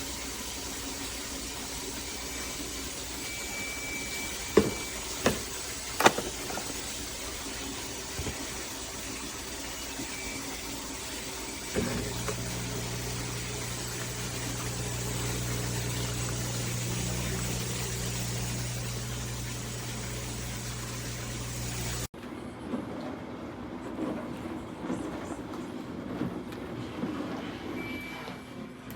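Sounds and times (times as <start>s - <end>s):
dishwasher water hiss: 0.0s - 22.1s
pump humming: 0.0s - 22.1s.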